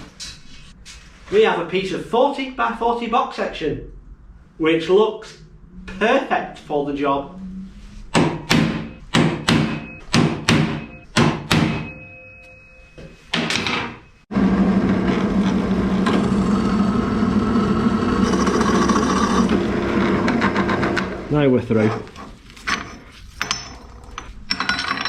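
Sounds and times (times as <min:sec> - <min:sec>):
sharp ringing knocks: 0:08.2 - 0:12.4
power tool cutting steel: 0:14.6 - 0:21.2.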